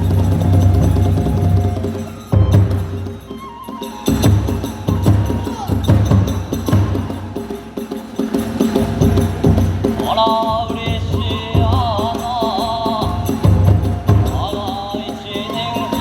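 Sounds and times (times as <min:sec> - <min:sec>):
high wavering melody: 0:00.0 - 0:07.8
clashing hand cymbals: 0:00.0 - 0:16.0
drum strokes: 0:00.0 - 0:16.0.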